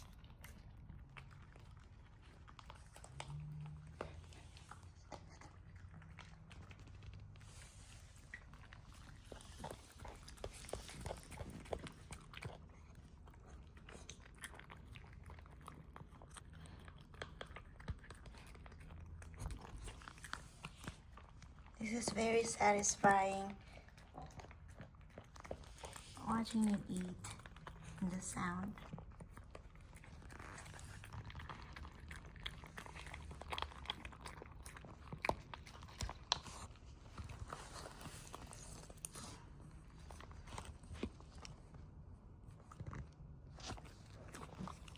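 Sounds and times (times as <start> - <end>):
puppy chewing food: 0.0 - 44.9.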